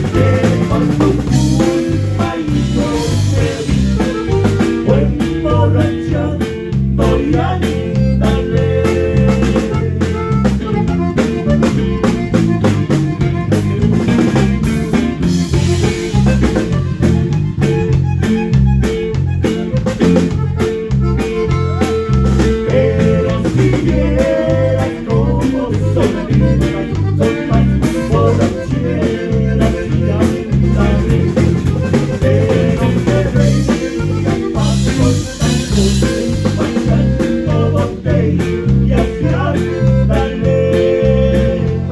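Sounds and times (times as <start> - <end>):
drum kit: 0.0 - 41.9
electric guitar: 0.0 - 41.9
walking bass line: 0.0 - 41.9.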